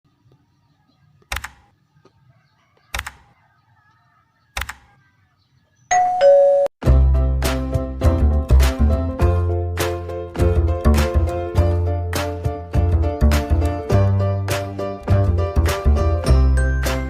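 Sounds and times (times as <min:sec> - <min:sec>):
two-note ding-dong chime: 0:05.9 - 0:06.7
upbeat music with steady beat: 0:06.8 - 0:17.0.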